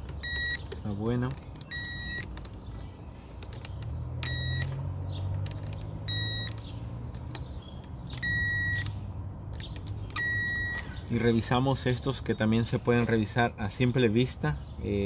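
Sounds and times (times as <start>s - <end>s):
circuit tester beeping: 0.1s - 0.8s, 1.6s - 2.4s, 4.2s - 4.8s, 6.0s - 6.6s, 8.1s - 9.0s, 10.1s - 10.9s
probe clicking on fuses: 3.3s - 10.9s.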